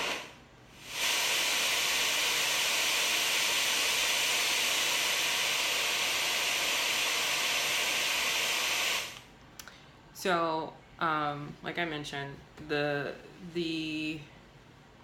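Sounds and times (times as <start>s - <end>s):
white noise hiss: 0.0s - 15.0s.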